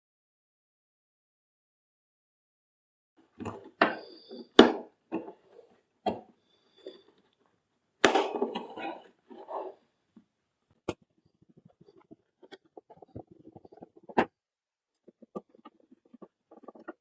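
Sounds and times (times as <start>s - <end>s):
faint squeaks: 3.4s - 4.6s, 5.2s - 7.3s.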